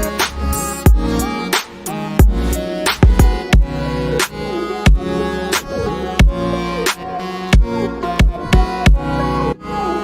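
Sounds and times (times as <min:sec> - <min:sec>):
synth melody: 0:00.0 - 0:10.0
kick drum hits: 0:03.0 - 0:03.7.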